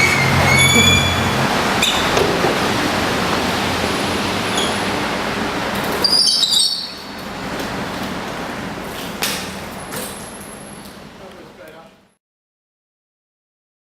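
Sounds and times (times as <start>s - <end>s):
high squeal: 0.0s - 2.2s, 4.4s - 4.9s, 5.9s - 7.1s
bike tyres rolling on pavement: 0.0s - 11.8s.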